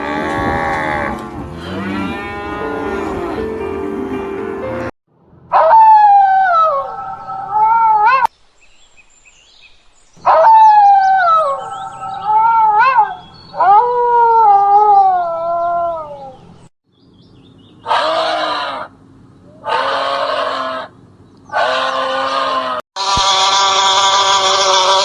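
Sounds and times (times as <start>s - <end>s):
rough animal calls: 0.0s - 3.4s, 10.2s - 16.5s, 17.8s - 25.0s
long wavering animal cries: 0.0s - 3.5s, 5.5s - 8.3s, 10.2s - 16.4s, 17.8s - 18.9s, 19.5s - 20.9s, 21.5s - 25.0s.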